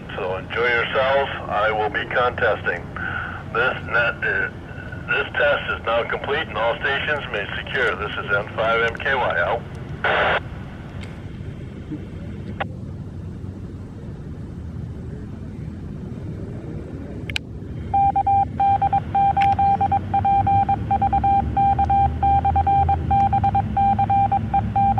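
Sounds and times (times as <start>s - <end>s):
low background rumble: 0.0s - 24.9s
click: 17.2s - 17.5s, 19.4s - 19.6s
morse code beeps: 17.9s - 24.9s.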